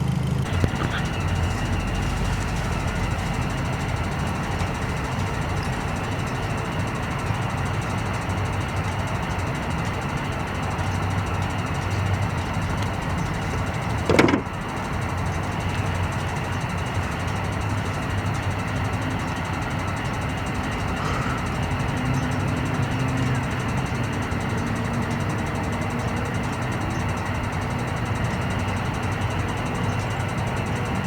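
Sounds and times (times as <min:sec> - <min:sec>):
loud engine burst: 0:00.0 - 0:23.9
car engine and exhaust droning: 0:00.0 - 0:31.0.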